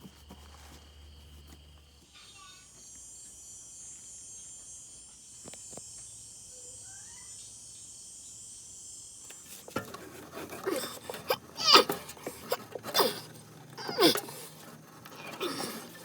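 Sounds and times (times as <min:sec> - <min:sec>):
knocks and scrapes: 0:09.3 - 0:16.0.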